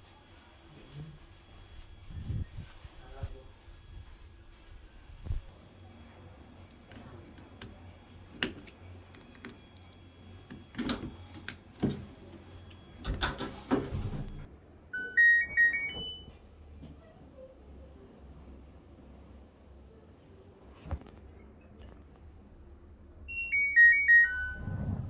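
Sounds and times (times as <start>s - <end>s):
washing machine electronic chime: 12.2s - 16.4s, 23.3s - 25.0s.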